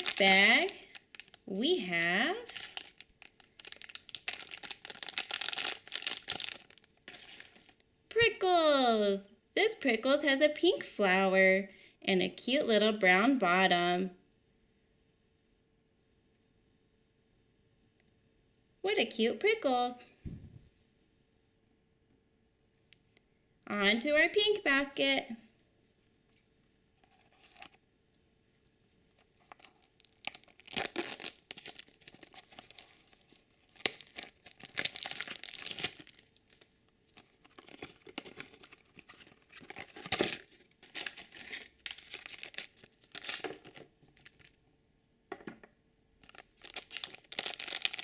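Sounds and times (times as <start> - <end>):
plastic bags torn open: 0.0 - 1.5, 2.5 - 7.8, 29.4 - 44.6, 46.2 - 48.0
plastic packaging crinkling: 0.0 - 1.6, 2.3 - 7.8, 27.0 - 27.8, 29.2 - 44.6, 46.2 - 48.0.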